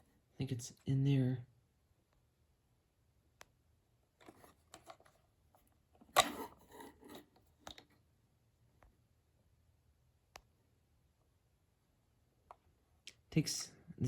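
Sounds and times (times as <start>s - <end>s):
packaging rustling and scraping: 6.2s - 7.4s.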